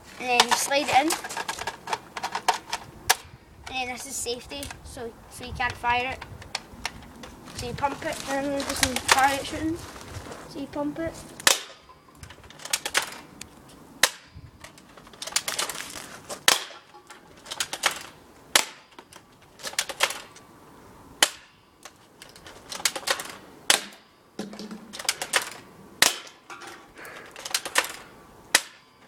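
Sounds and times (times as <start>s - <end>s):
airsoft rifle pump clacks: 0.2s - 3.3s, 11.4s - 13.3s, 14.0s - 20.4s, 21.3s - 24.0s, 24.6s - 28.8s
airsoft rifle shots: 11.4s - 11.9s, 14.0s - 14.4s, 16.4s - 19.0s, 22.7s - 26.5s, 27.4s - 29.0s.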